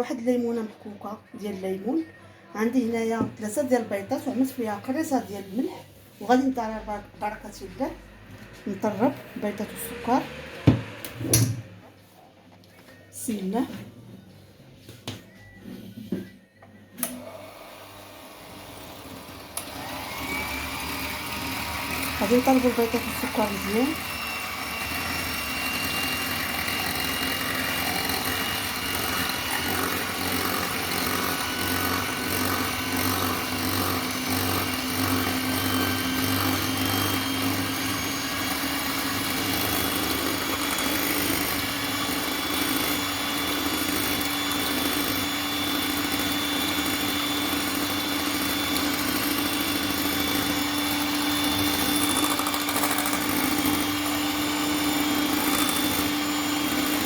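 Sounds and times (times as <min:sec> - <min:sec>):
electric mixer running: 0:06.6 - 0:11.8, 0:17.0 - 0:57.0.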